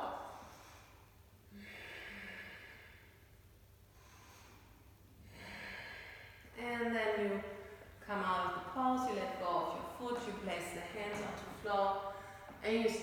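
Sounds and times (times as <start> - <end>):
woman breathing slowly: 0.1 - 6.6, 12.0 - 12.6.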